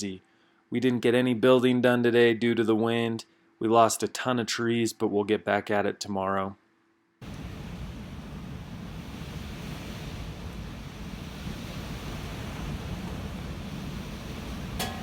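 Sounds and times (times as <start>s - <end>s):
strong wind buffeting microphone: 7.2s - 15.0s.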